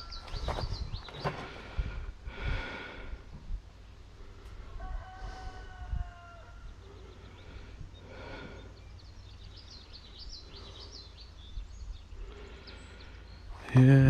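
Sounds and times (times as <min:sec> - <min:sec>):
wind rumble on microphone: 0:00.0 - 0:08.0
songbirds chirping: 0:00.0 - 0:14.0.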